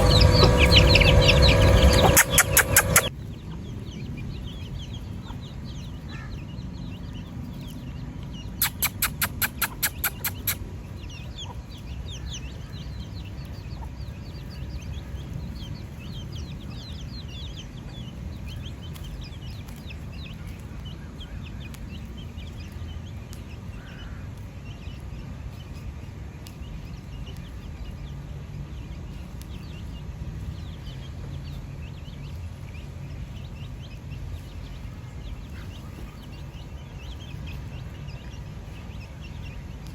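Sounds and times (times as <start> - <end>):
chickens clucking: 0.0 - 3.1, 8.6 - 11.8, 35.3 - 38.4
high chirps: 0.0 - 3.1, 8.6 - 10.6
loud sharp pulses: 0.0 - 3.1
steady low rumble: 0.0 - 8.6.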